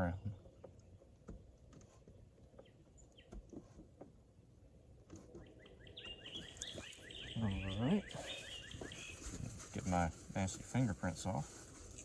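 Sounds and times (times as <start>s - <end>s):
bird chirping rapidly: 5.3s - 9.4s.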